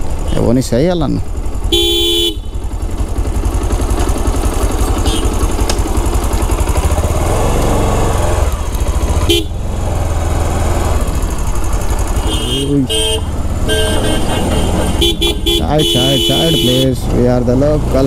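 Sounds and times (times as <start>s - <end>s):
motorcycle engine running: 0.0s - 18.0s
horn honk: 1.6s - 2.8s, 4.9s - 5.6s, 9.2s - 9.7s, 12.1s - 17.1s.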